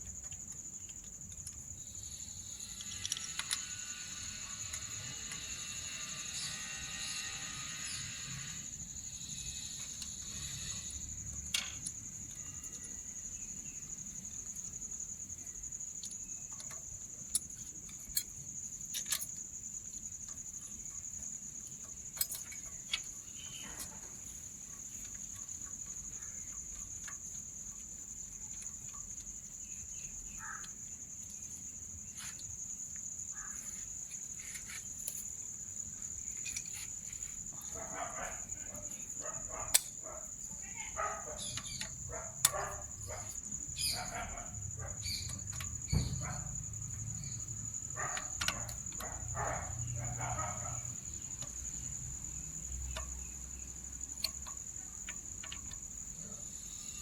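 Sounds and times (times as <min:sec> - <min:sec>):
high-pitched insect trill: 0:00.0 - 0:57.0.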